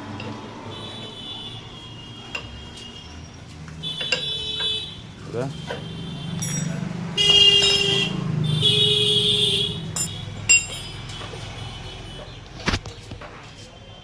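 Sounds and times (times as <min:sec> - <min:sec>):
vehicle horn honks: 0:03.8 - 0:10.2.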